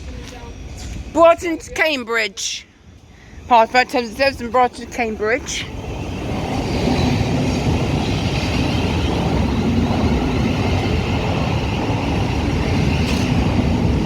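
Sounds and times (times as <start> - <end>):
electric train rumbling past: 0.0 - 14.0.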